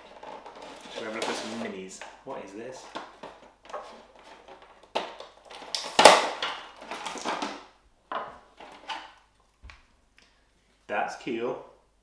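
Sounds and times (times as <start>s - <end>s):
packaging rustling and crinkling: 0.0s - 7.7s, 8.4s - 9.2s.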